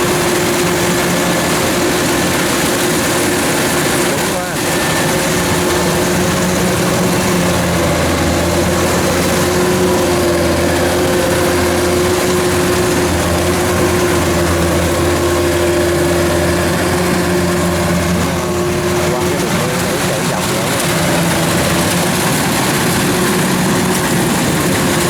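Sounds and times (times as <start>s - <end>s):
harvester diesel engine droning: 0.0s - 25.0s.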